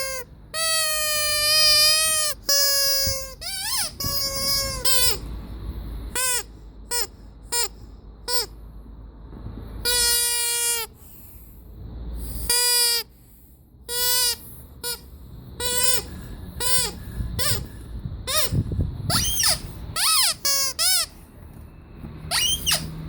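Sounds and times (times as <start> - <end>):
rubber squeaky toy squeaking: 0.0 - 5.4, 6.1 - 8.6, 9.8 - 11.0, 12.3 - 13.1, 13.9 - 21.3, 22.2 - 23.0.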